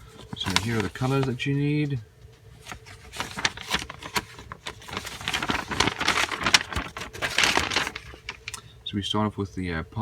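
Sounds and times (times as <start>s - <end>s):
pages turning: 0.0s - 1.6s, 2.4s - 8.7s
paper rustling and crinkling: 0.0s - 8.7s.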